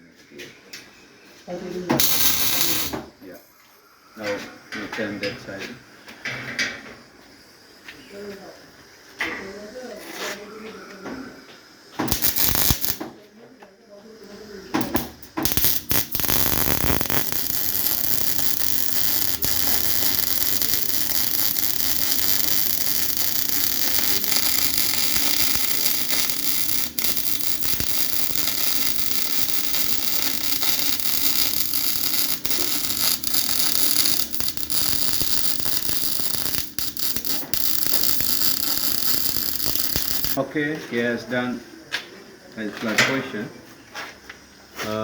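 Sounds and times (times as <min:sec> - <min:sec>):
welding arc crackling and hissing: 0:02.0 - 0:03.2, 0:12.0 - 0:13.2, 0:14.3 - 0:40.4.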